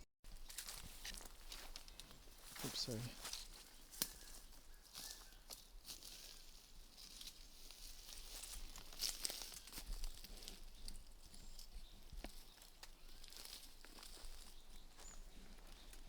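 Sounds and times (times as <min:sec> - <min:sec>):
dry leaves and twigs crackling: 0:00.3 - 0:16.0
small twig snaps: 0:03.9 - 0:04.4.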